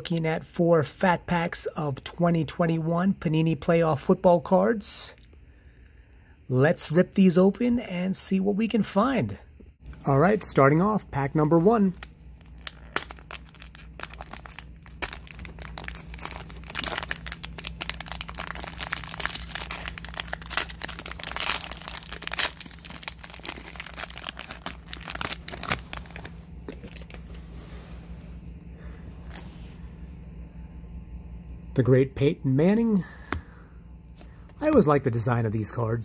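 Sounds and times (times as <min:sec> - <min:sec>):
foil wrapper tearing and crinkling: 0:11.9 - 0:27.2.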